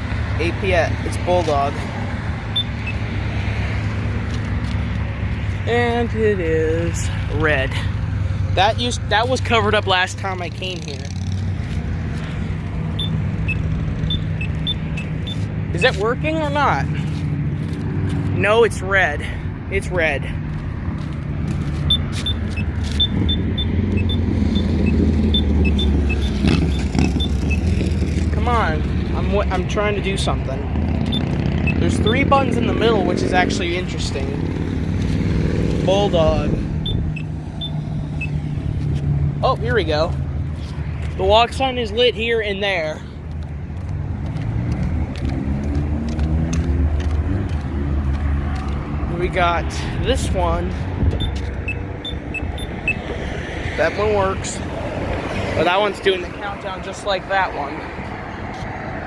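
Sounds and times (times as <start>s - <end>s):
engine hum: 0.0s - 59.0s
road traffic rumble: 0.0s - 59.0s
pedestrian signal beeps: 2.5s - 3.0s, 13.0s - 15.4s, 21.9s - 27.7s, 31.1s - 32.2s, 36.8s - 38.4s, 51.1s - 53.0s.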